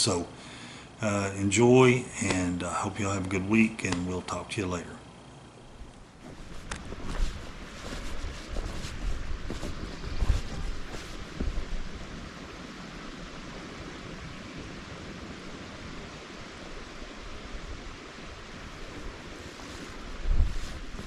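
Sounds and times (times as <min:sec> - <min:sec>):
steady hiss: 0:00.0 - 0:21.0
low bumps: 0:05.7 - 0:12.8
wind rushing: 0:05.7 - 0:21.0.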